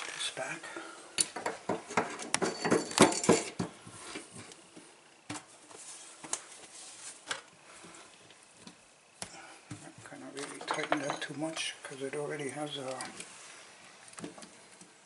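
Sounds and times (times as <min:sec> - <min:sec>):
faucet parts clinking: 0:10.5 - 0:11.3.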